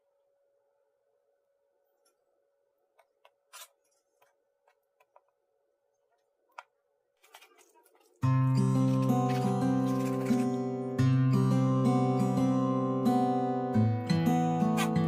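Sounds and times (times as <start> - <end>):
faint steady hum: 0.0 - 14.7
strummed acoustic guitar music: 8.2 - 15.0.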